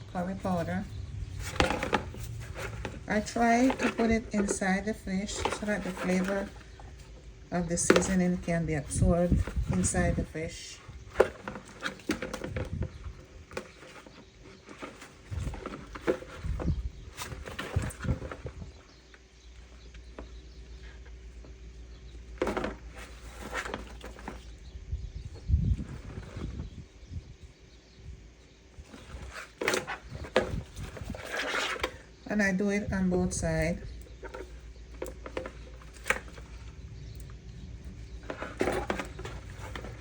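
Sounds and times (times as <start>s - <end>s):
low steady hum: 0.0s - 40.0s
rustle or scrape: 0.1s - 7.0s, 22.4s - 24.5s, 28.8s - 32.1s
hands handling raw fish: 33.6s - 40.0s.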